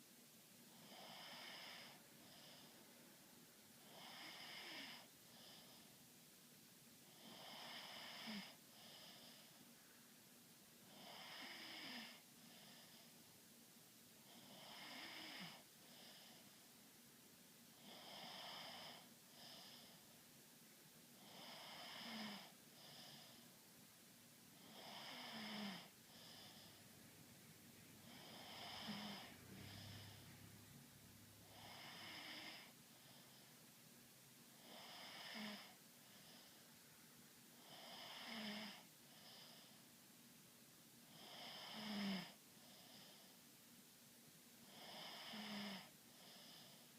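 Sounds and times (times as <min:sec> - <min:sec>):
faint whistling snoring: 0:00.8 - 0:02.6, 0:03.9 - 0:05.5, 0:07.2 - 0:09.3, 0:10.9 - 0:12.9, 0:14.3 - 0:16.3, 0:21.2 - 0:23.4, 0:24.6 - 0:26.8, 0:28.0 - 0:30.5, 0:31.4 - 0:32.7, 0:37.6 - 0:39.4, 0:41.1 - 0:42.3, 0:44.7 - 0:46.8.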